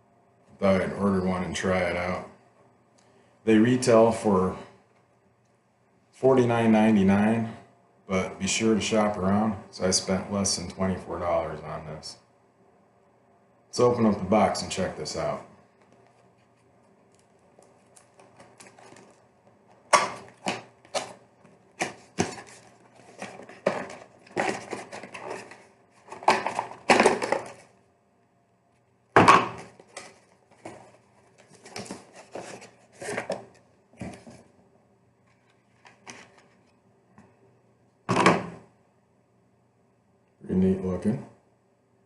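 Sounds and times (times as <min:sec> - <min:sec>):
packaging knocks and rustles: 0:17.1 - 0:27.7, 0:29.2 - 0:34.5
cardboard box being opened: 0:21.8 - 0:27.6.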